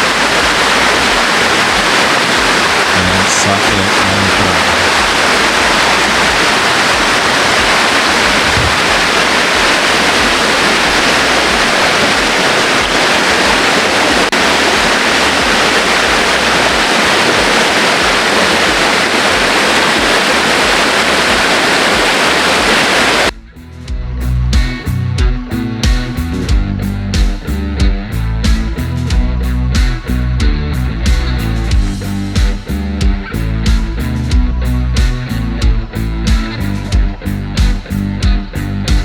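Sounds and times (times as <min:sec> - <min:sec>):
stream water rushing: 0:00.0 - 0:23.3.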